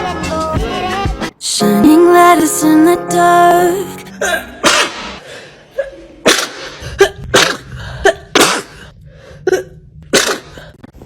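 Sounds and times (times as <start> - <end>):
person sneezing: 4.2 - 10.7.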